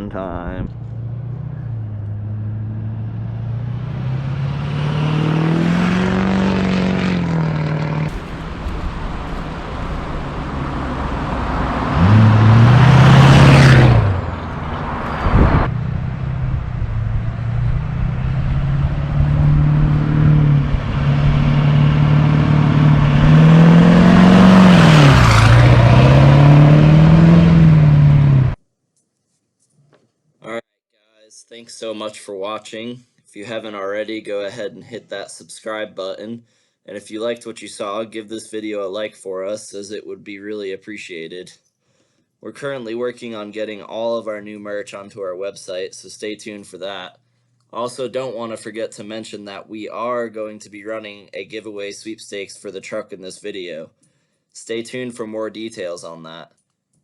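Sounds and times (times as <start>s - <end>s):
diesel engine revving: 0.0s - 28.6s.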